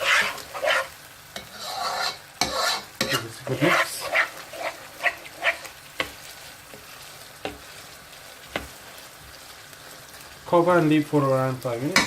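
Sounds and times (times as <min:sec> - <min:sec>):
utensil scraping and knocking pan: 0:00.0 - 0:06.2
meat sizzling in a frying pan: 0:00.0 - 0:12.0.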